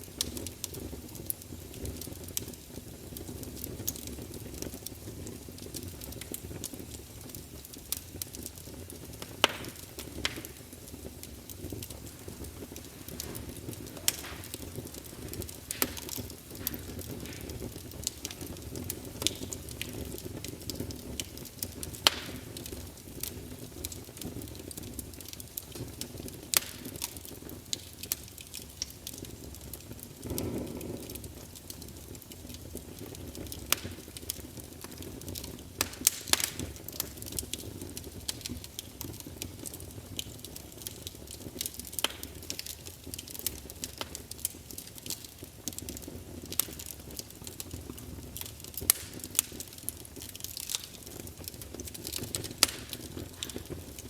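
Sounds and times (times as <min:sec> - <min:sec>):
low rumble of flames: 0:00.0 - 0:54.0
sharp pops from fire: 0:00.0 - 0:54.0
wood fire crackling: 0:00.0 - 0:54.0.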